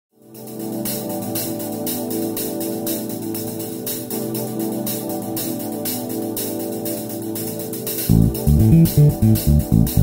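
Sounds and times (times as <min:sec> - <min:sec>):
hi-hat or tambourine beat: 0:00.3 - 0:10.0
sustained keyboard chords: 0:08.1 - 0:10.0.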